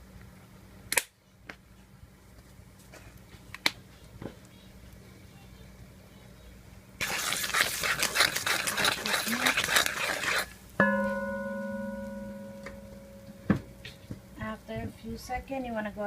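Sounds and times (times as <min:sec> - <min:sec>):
metallic ring: 0:10.8 - 0:14.4.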